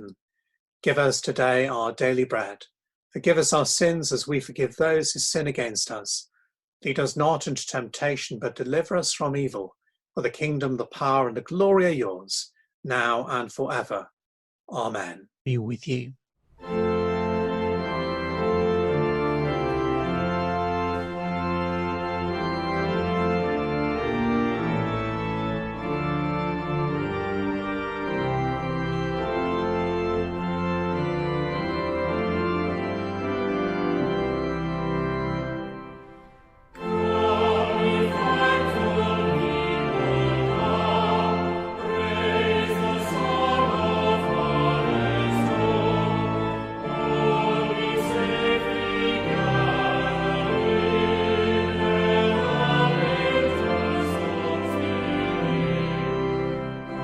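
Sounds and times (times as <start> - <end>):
church organ chords: 16.6 - 57.0
voices singing a hymn: 36.8 - 57.0.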